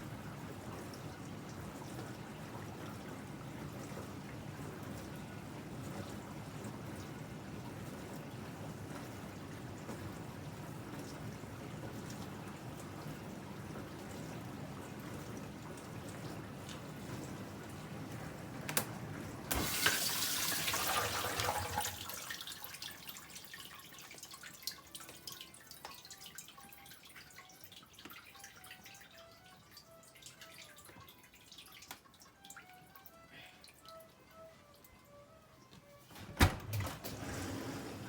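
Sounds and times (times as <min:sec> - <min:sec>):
water dripping and trickling: 0:00.0 - 0:18.9, 0:19.5 - 0:35.2
water spraying inside dishwasher: 0:19.5 - 0:32.3.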